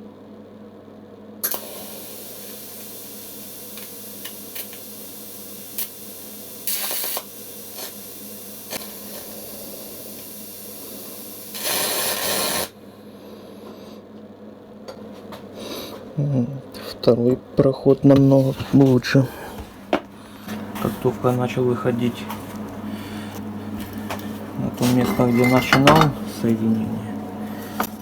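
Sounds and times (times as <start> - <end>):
welding arc hissing: 1.4 - 12.8.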